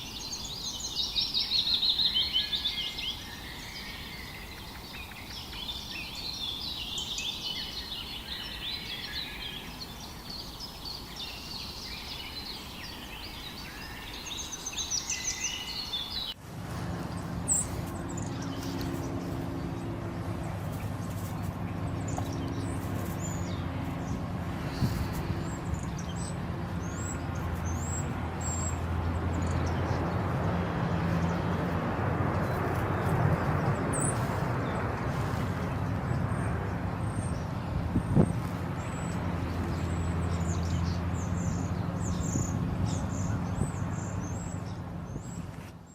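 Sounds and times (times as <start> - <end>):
songbirds chirping: 0.0 - 45.9
steady low hum: 16.3 - 45.6.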